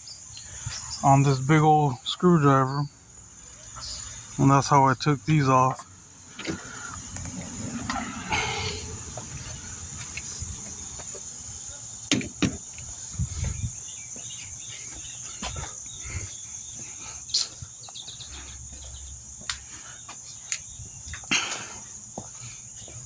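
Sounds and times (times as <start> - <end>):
high-pitched insect chirr: 6.1 - 23.0.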